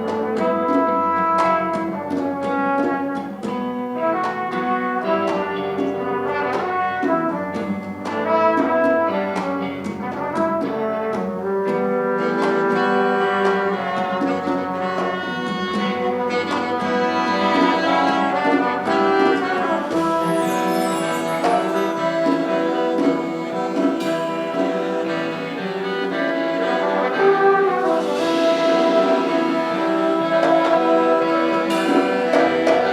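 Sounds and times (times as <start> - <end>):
brass band playing: 0.0 - 32.9
percussion beat: 0.0 - 32.9.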